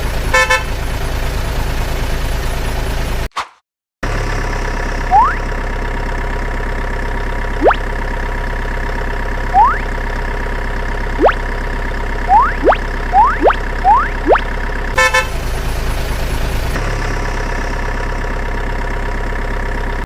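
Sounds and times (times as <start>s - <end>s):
heavy machine engine idling: 0.0s - 3.2s, 4.1s - 20.0s
whistle-like pitch glides: 5.1s - 5.4s, 9.5s - 9.9s, 11.2s - 11.4s, 12.3s - 14.5s.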